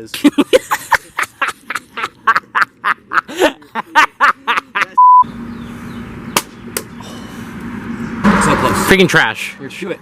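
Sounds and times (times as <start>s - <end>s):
censor bleep: 5.0s - 5.3s.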